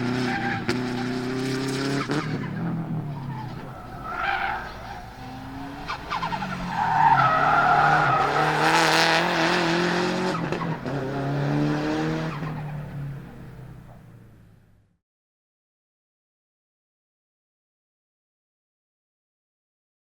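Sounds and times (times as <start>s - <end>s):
rally car engine revving past: 0.0s - 13.4s.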